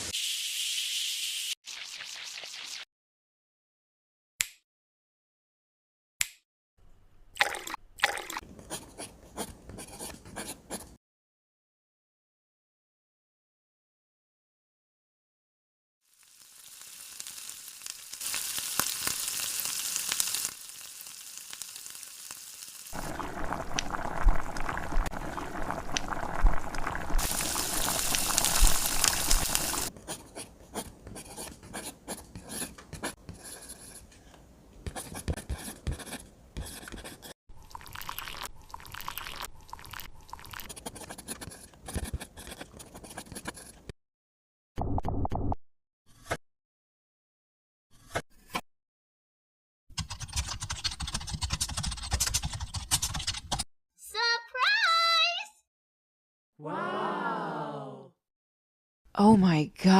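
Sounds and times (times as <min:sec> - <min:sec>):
food sizzling in oil: 0:00.0 - 0:02.9, 0:16.0 - 0:29.9.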